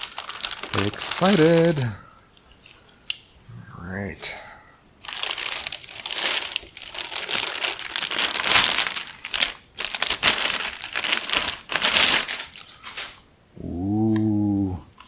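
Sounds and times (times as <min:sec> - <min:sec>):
plastic packaging crinkling: 0:00.0 - 0:02.7, 0:05.0 - 0:13.2.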